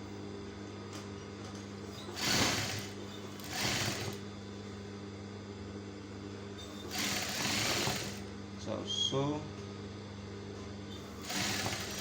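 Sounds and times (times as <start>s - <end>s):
sewing machine stitching: 2.0s - 4.2s, 6.8s - 8.2s, 11.1s - 12.0s.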